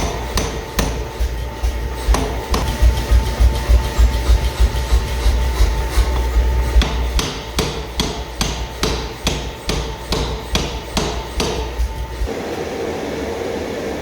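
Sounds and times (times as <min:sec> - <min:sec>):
low hum: 0:00.0 - 0:08.4
hammer striking metal on anvil: 0:00.0 - 0:12.3.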